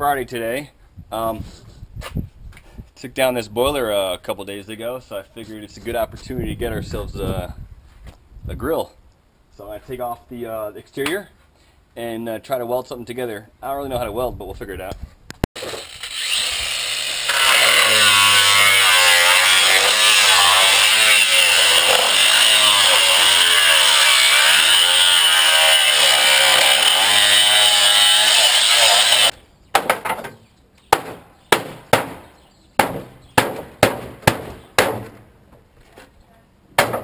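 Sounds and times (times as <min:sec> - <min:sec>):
power tool cutting sheet metal: 0:15.6 - 0:29.3
sharp knocks: 0:29.7 - 0:35.2.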